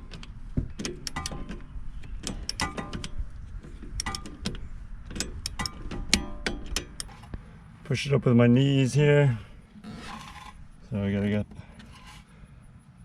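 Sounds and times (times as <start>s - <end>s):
wrench ratcheting metallic clicks: 4.0s - 7.1s.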